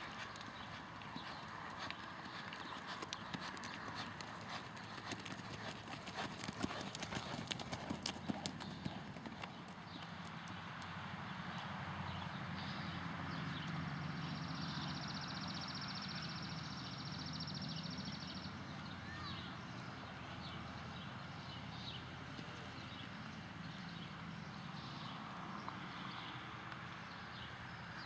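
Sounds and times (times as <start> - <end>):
horse hoofbeats: 0.0 - 10.6.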